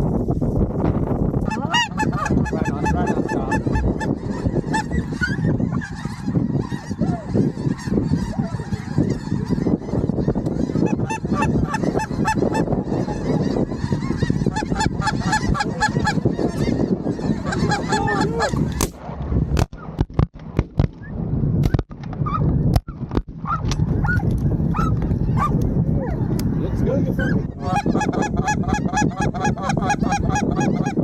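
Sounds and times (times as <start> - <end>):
geese honking: 1.4 - 18.8, 27.1 - 31.0.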